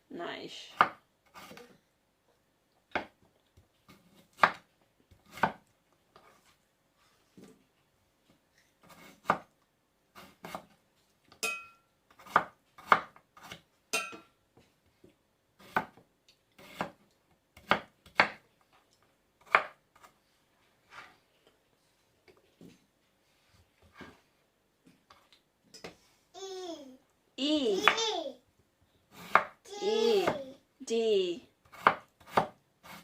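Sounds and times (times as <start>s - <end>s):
knife chopping on cutting board: 4.3s - 4.6s, 5.2s - 5.6s, 12.2s - 14.2s, 17.6s - 18.4s, 19.4s - 20.1s, 29.2s - 29.6s, 31.7s - 33.0s
ringing knife clink: 11.4s - 11.8s.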